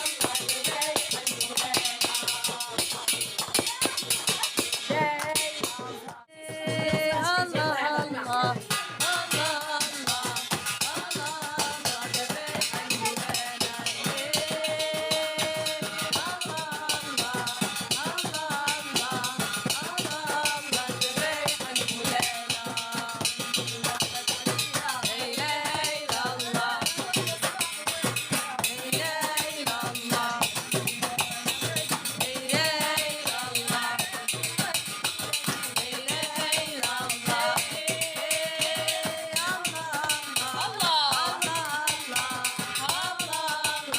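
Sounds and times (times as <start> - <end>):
hand percussion with rattles and drums: 0.0 - 43.9
person singing melody: 9.0 - 18.4.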